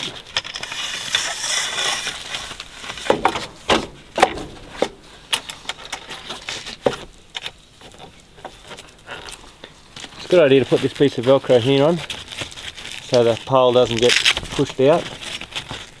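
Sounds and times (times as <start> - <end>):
sharp clicks and knocks of poles: 0.0 - 9.4
rustling scrape: 0.0 - 16.0.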